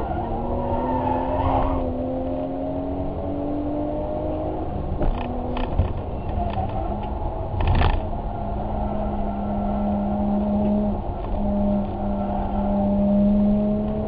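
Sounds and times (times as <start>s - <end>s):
clatter of knocks: 5.0s - 6.8s.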